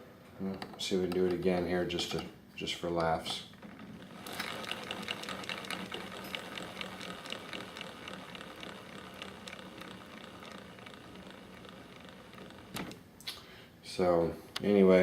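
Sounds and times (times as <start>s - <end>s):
gears ticking rattle: 3.0s - 13.0s
helicopter rotor spinning down: 3.5s - 13.0s.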